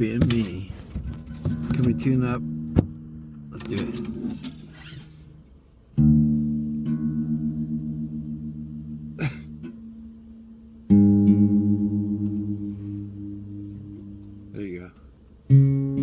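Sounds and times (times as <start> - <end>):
guitar strings plucked: 0.0 - 14.7
short squeak: 3.8 - 5.3.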